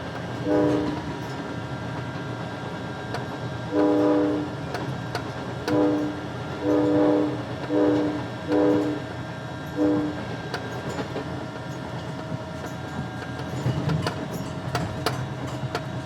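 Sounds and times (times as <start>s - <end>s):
passing train rumble: 0.0s - 16.0s
locomotive air horn blasts: 0.4s - 1.0s, 3.7s - 4.6s, 5.6s - 9.1s, 9.8s - 10.2s.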